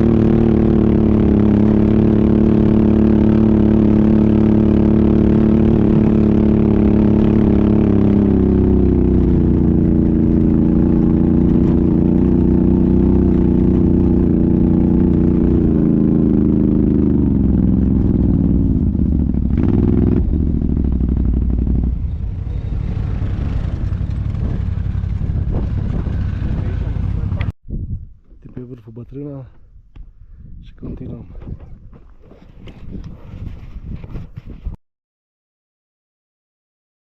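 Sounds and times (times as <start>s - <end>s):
atv engine running: 0.0s - 27.5s.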